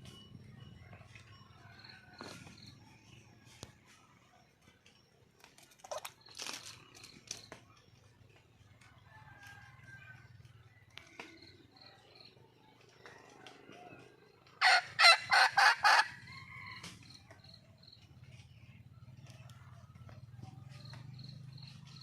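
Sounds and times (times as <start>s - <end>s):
junglefowl calling: 14.6s - 16.9s.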